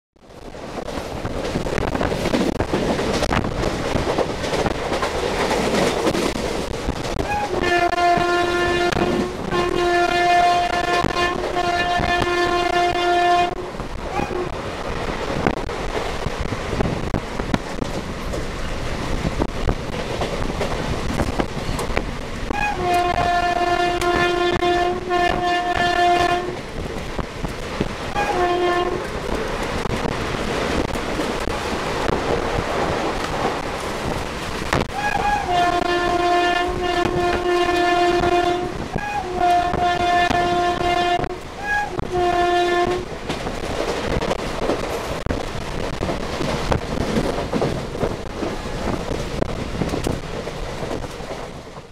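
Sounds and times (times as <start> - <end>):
train rumbling on rails: 0.2 - 51.9
locomotive twin-tone horn: 7.2 - 14.6, 22.5 - 26.6, 28.1 - 29.1, 34.9 - 43.1.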